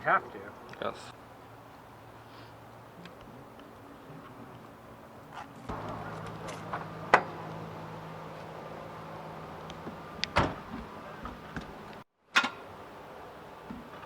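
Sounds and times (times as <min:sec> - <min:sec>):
low electrical hum: 0:05.6 - 0:12.0.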